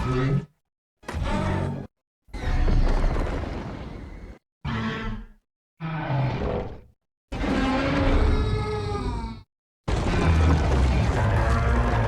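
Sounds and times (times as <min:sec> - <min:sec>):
deep monster roar: 0:07.4 - 0:12.0.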